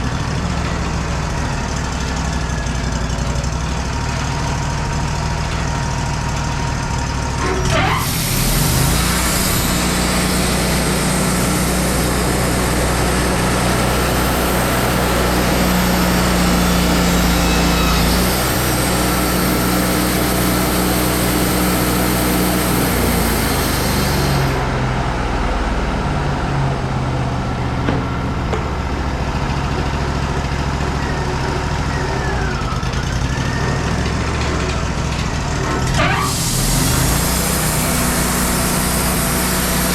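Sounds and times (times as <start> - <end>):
sawmill engine running: 0.0 - 39.9
band saw blade cutting wood: 7.4 - 24.6, 35.8 - 39.9.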